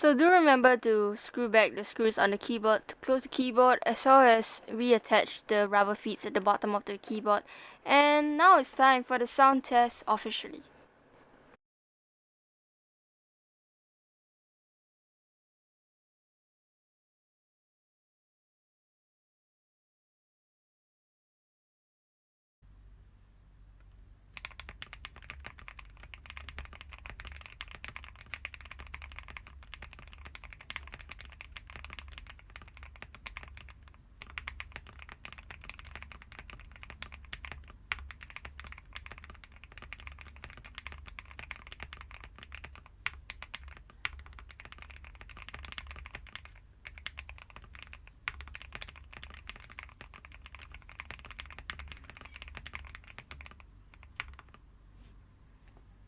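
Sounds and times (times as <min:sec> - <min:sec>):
mechanical keyboard typing: 0:24.4 - 0:54.6.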